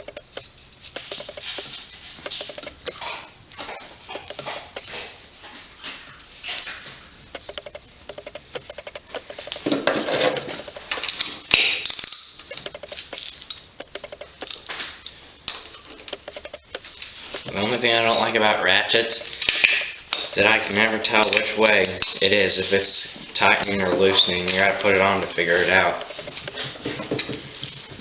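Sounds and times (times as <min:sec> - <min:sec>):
socket ratchet clicking: 0:07.3 - 0:09.7, 0:10.4 - 0:14.7, 0:15.5 - 0:17.6.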